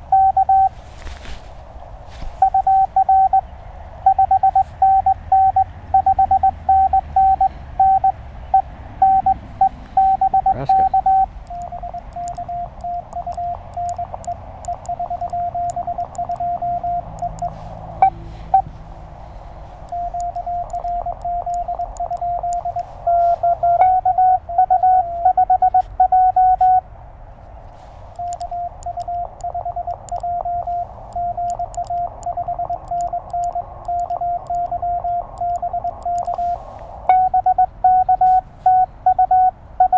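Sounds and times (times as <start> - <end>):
morse code tones: 0.0 - 1.4, 2.2 - 26.9, 27.7 - 39.9
radio band hiss: 9.4 - 23.8, 27.7 - 39.0.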